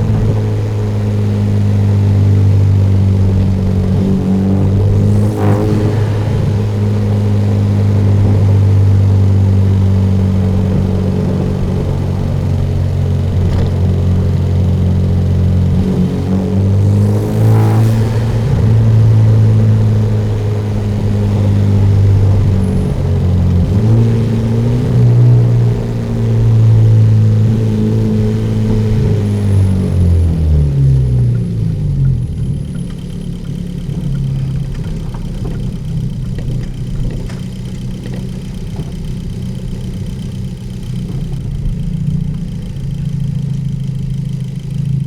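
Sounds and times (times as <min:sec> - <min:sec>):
car engine droning: 0:00.0 - 0:45.0.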